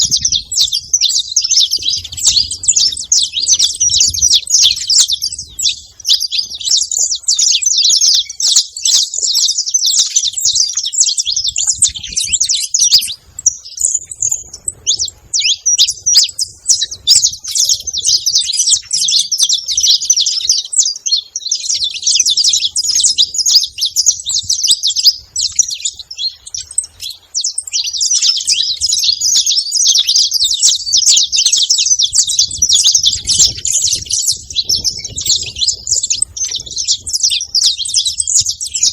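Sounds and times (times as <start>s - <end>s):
finch chirping and twittering: 0.0s - 38.9s.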